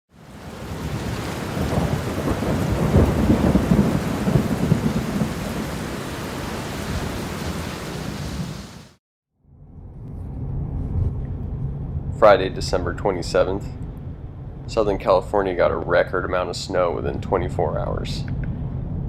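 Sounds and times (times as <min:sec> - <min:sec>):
steady rain: 0:00.1 - 0:09.0
thunder rumbling: 0:00.2 - 0:09.0, 0:09.7 - 0:19.0.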